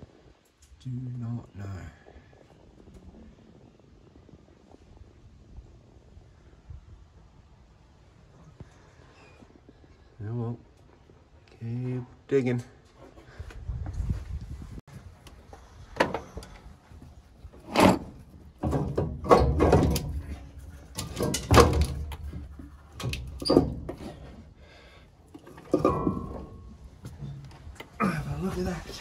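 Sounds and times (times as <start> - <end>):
metal engine parts clunking: 15.8 - 29.0.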